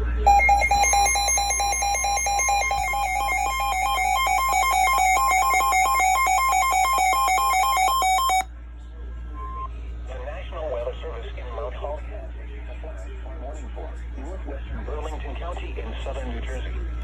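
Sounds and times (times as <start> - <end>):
electronic warbling alarm tone: 0.0 - 8.4.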